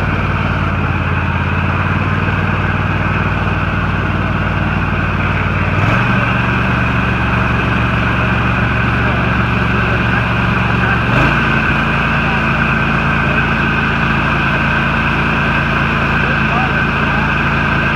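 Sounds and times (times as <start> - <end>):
lawn tractor engine running: 0.0 - 17.9.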